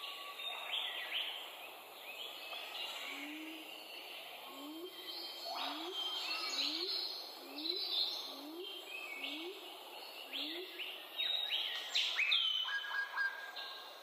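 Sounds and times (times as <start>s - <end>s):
birds chirping and whistling: 4.6s - 9.6s, 10.3s - 13.8s.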